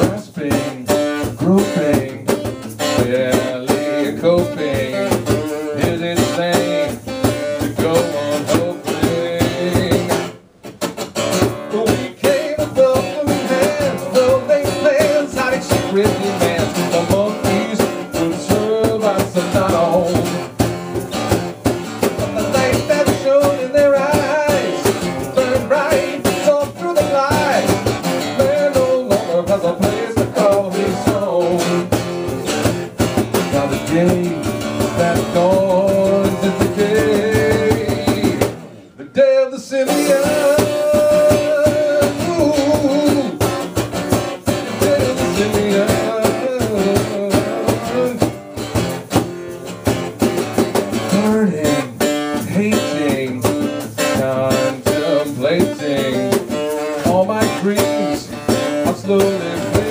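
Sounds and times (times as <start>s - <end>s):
steady drum beat: 0.0s - 38.8s, 39.9s - 59.9s
guitar with bending notes: 0.0s - 59.9s.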